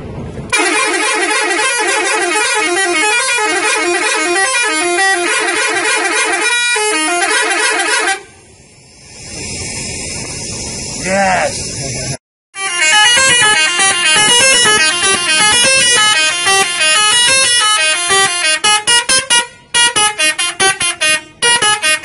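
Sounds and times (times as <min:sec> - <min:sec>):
multi-tone bus horn tune: 0:00.5 - 0:08.4, 0:12.5 - 0:22.0.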